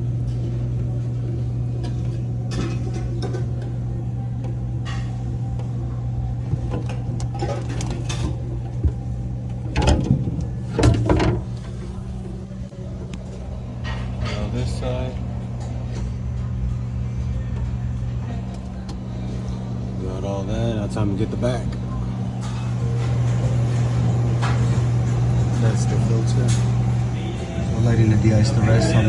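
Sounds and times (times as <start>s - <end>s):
refrigeration equipment humming: 0.0s - 29.0s
metal parts knocking and rattling: 6.5s - 12.5s.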